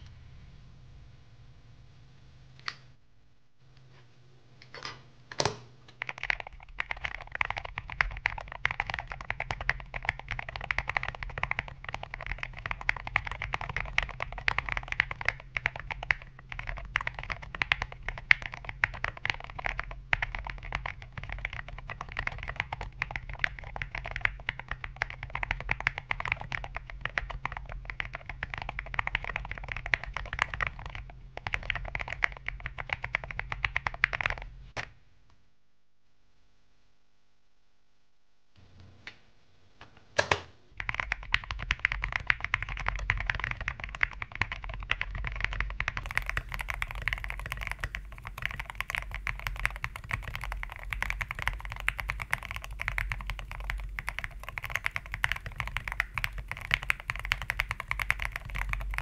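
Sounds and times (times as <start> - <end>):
fast typing on mechanical keyboard: 6.0 - 34.5, 40.8 - 59.0.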